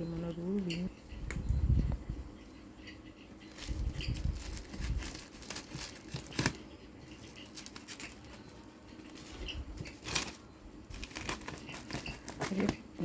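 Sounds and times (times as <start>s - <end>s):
packaging tearing and rustling: 3.5s - 9.3s, 9.9s - 13.0s.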